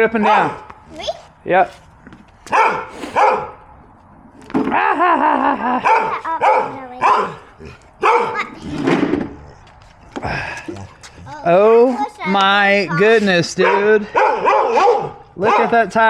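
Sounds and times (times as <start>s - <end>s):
dog barking: 0.2s - 0.7s, 2.5s - 3.6s, 5.8s - 8.5s, 13.6s - 15.9s.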